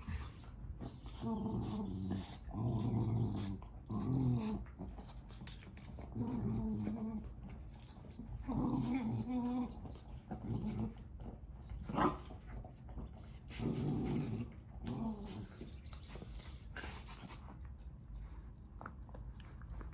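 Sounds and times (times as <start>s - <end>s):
dog growling: 0.8s - 12.4s, 13.2s - 17.3s
squeaky toy squeaking: 15.0s - 17.4s.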